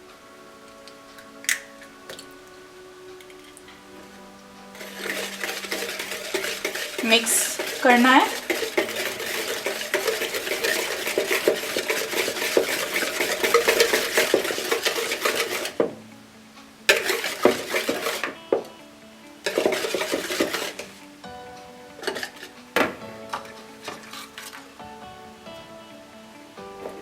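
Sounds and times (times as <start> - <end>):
utensil beating batter in bowl: 4.8 - 16.0, 16.9 - 18.7, 19.4 - 21.0.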